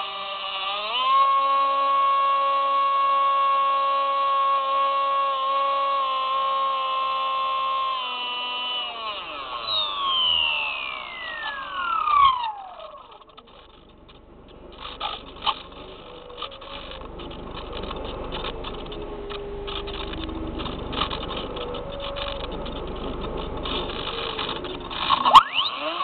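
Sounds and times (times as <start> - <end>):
electric motor and propeller whine: 0.0 - 26.0
scattered clicks: 7.8 - 26.0.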